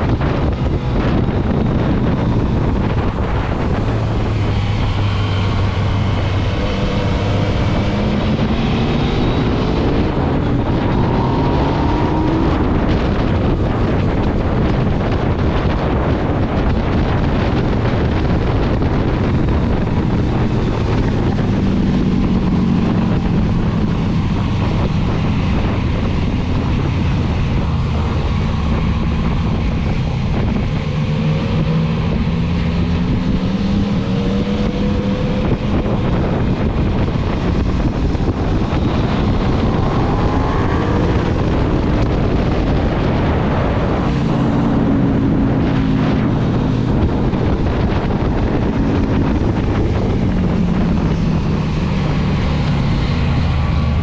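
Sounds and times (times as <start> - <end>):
wind rush on microphone: 0.0 - 54.0
motorcycle engine running: 12.0 - 54.0.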